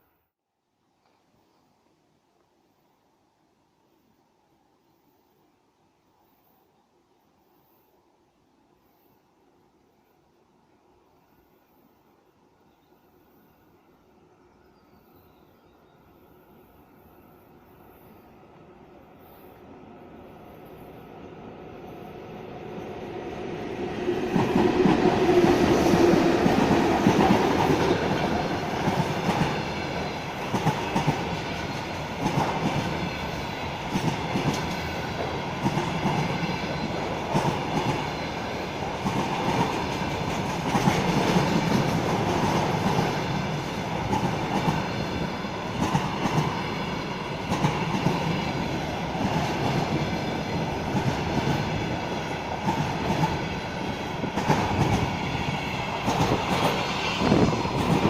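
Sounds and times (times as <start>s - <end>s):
freight train rumbling past: 17.8s - 58.0s.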